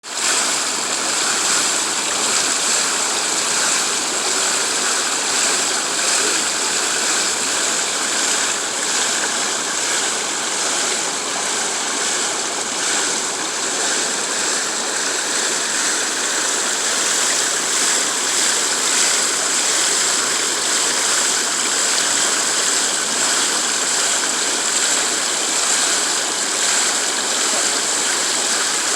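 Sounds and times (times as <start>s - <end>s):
running water rushing: 0.0s - 28.9s.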